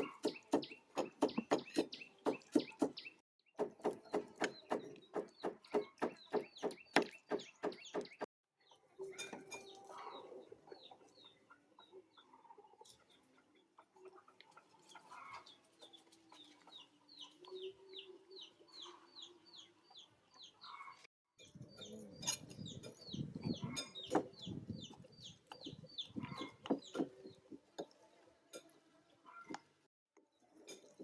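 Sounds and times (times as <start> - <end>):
chicks peeping: 10.8 - 27.5.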